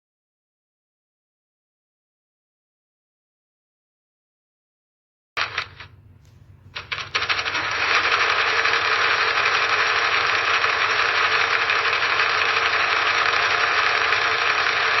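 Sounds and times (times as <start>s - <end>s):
sewing machine stitching: 5.4s - 5.9s, 6.7s - 15.0s.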